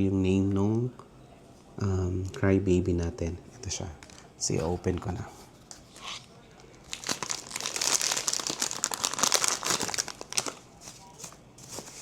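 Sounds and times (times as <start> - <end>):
packaging crinkling and tearing: 5.9 - 12.0.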